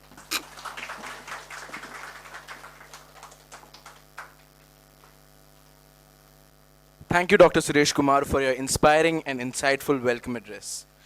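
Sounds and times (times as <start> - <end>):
audience clapping: 0.0 - 5.8
steady electrical hum: 0.0 - 11.0.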